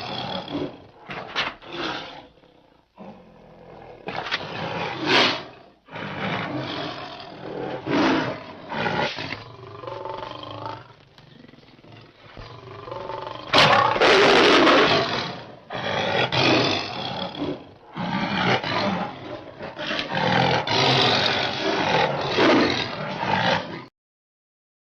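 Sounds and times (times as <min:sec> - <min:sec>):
big cat growling: 0:00.0 - 0:23.9
big cat roaring: 0:00.0 - 0:23.9
big cat snarling: 0:00.0 - 0:23.9.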